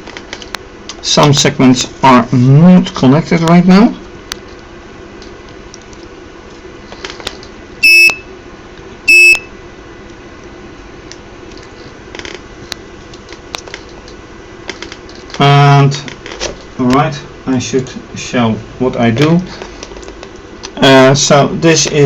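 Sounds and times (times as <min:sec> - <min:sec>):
electronic buzzer beeps: 0:07.8 - 0:08.3, 0:09.1 - 0:09.5.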